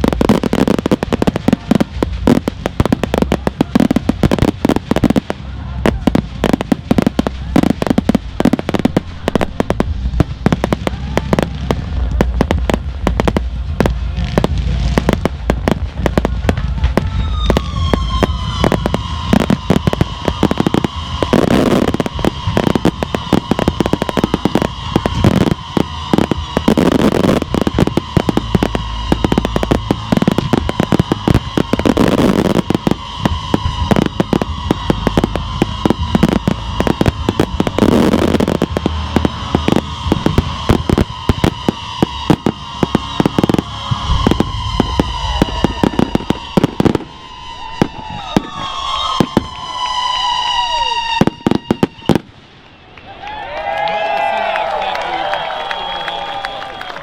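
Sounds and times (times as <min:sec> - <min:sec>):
fireworks bangs and crackles: 0:00.0 - 0:57.0.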